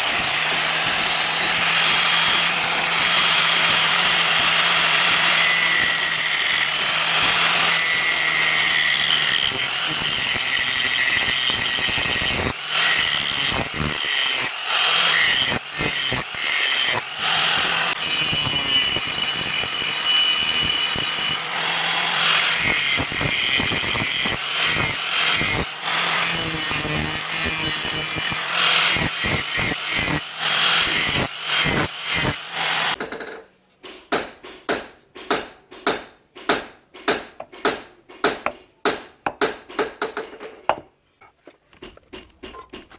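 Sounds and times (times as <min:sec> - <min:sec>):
power grinder grinding steel: 0:00.0 - 0:33.0.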